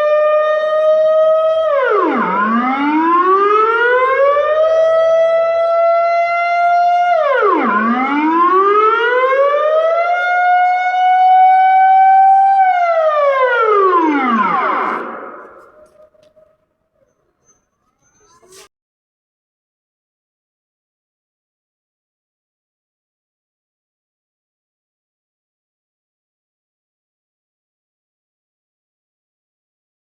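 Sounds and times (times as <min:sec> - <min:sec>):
air raid siren rising and falling: 0:00.0 - 0:16.5.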